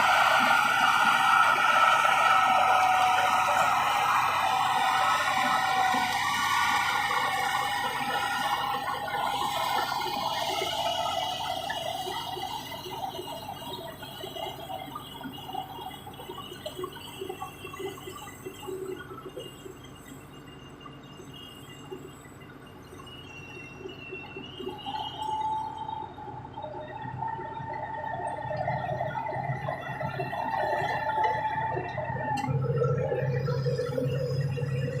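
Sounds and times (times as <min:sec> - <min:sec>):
bulldozer running: 0:00.0 - 0:13.8.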